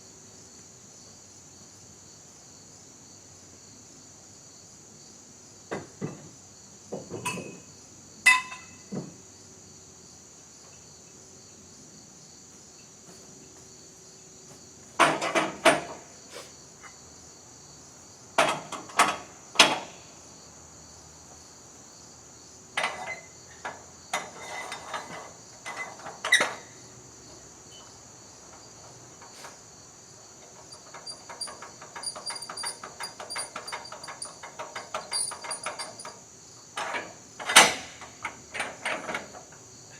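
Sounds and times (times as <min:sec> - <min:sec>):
crickets chirring: 0:00.0 - 0:39.9
knocks and clanks: 0:14.9 - 0:16.1, 0:18.4 - 0:20.0, 0:30.4 - 0:36.2, 0:36.8 - 0:39.6.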